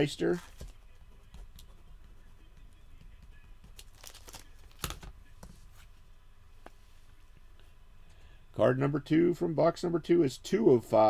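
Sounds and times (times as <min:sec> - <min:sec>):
wrapping rustling: 0:03.6 - 0:05.8.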